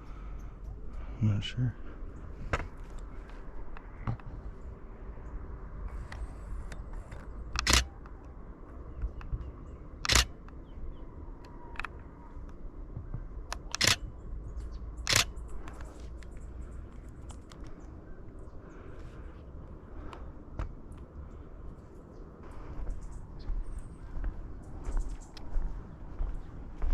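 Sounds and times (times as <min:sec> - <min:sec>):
faint camera clicks: 0:06.1 - 0:08.2, 0:10.0 - 0:10.6, 0:13.5 - 0:14.0, 0:15.0 - 0:16.3
camera shutter firing: 0:07.6 - 0:07.9, 0:10.0 - 0:10.4, 0:13.6 - 0:14.0, 0:15.0 - 0:15.3.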